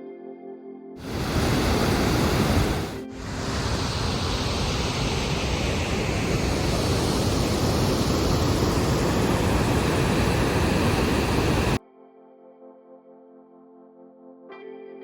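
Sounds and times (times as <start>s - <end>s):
waterfall rushing: 1.0s - 11.8s.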